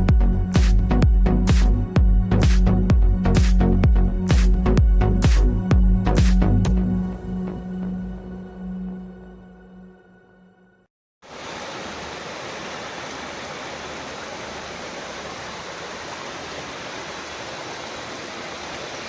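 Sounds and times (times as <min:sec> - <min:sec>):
fast-flowing water rushing: 0:11.2 - 0:19.0.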